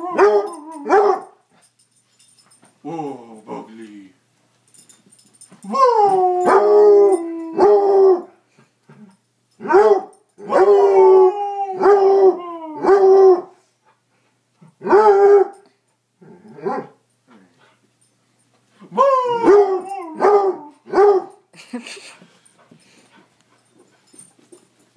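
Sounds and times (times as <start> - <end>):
dog howling and baying: 0.0 - 1.2, 5.6 - 8.3, 9.6 - 13.6, 18.8 - 21.4.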